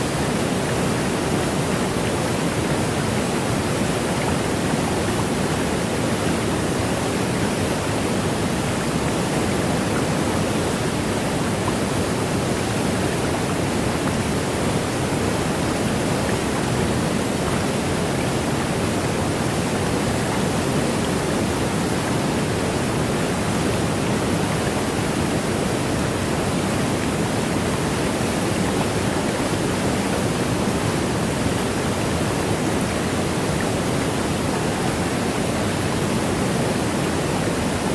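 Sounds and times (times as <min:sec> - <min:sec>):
waterfall rushing: 0:00.0 - 0:37.9.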